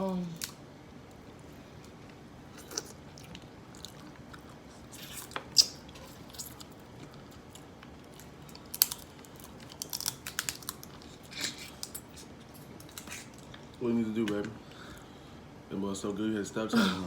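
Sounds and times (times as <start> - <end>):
person chewing and smacking: 1.8 - 14.4.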